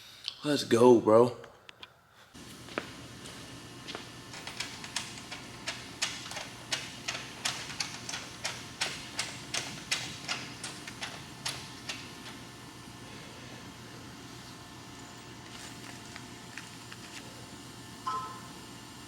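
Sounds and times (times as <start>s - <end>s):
low steady hum: 2.4s - 19.0s.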